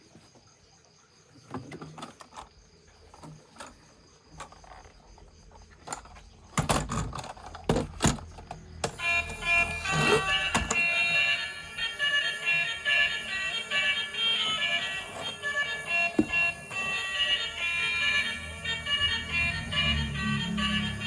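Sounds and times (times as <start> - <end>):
electronic held tones: 9.0 - 21.0.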